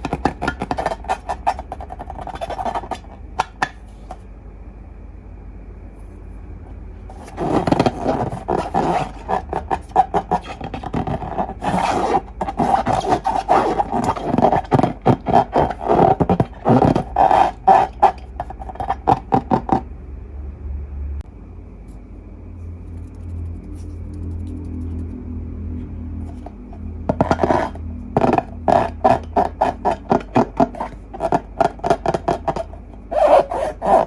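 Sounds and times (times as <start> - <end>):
rubber balloon squealing: 0.0 - 3.5, 7.1 - 19.8, 26.3 - 34.0.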